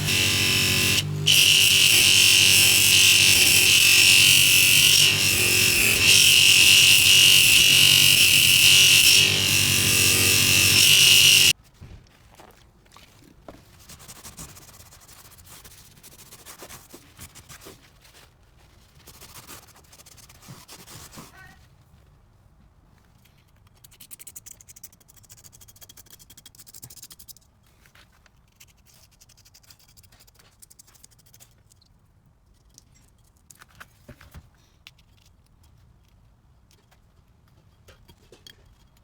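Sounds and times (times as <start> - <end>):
metal scraped by hand: 0.0 - 11.5
power tool motor working metal: 0.0 - 11.5.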